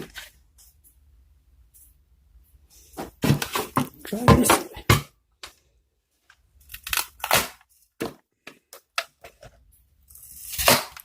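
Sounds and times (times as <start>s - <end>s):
loud plastic crack: 6.7s - 7.6s, 10.5s - 11.0s.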